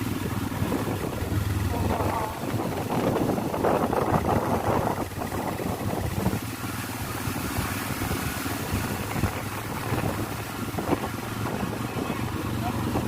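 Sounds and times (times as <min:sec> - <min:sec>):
motorcycle engine running: 0:00.0 - 0:13.0
road noise: 0:00.0 - 0:13.0
wind noise: 0:00.0 - 0:13.0.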